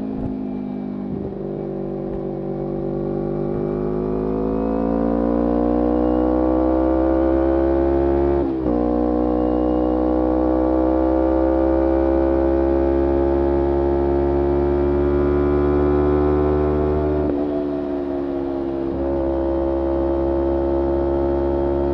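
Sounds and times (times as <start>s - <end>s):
motorcycle engine accelerating: 0.0s - 21.9s.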